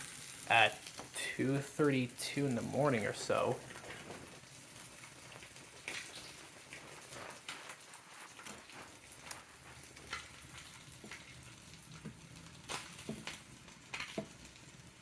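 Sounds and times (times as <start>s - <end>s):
meat sizzling in a frying pan: 0.0s - 15.0s.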